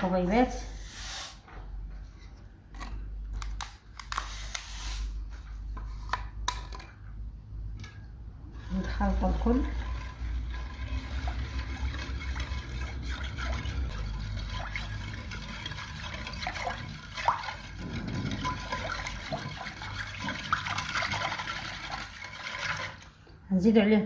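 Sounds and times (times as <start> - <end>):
liquid stirred in a bowl: 7.8 - 23.4.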